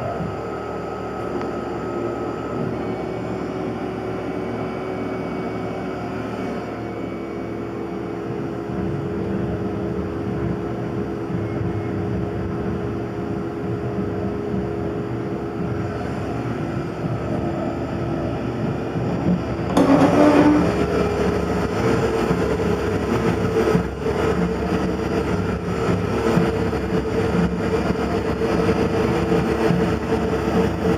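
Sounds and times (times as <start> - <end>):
milling machine hum: 15.5 - 30.9
harsh machining noise: 19.7 - 21.1.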